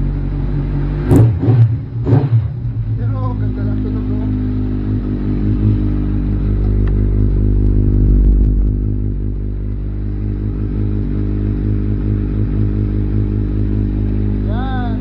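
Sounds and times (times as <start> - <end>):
motorcycle engine idling: 0.0 - 1.1, 1.7 - 15.0.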